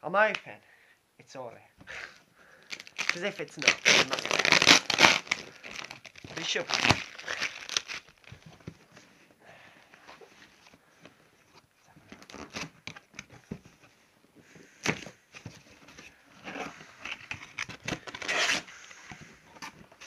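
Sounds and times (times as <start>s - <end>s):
packing paper rustling: 2.6s - 9.1s, 10.2s - 20.0s
cardboard box being torn open: 2.9s - 8.1s.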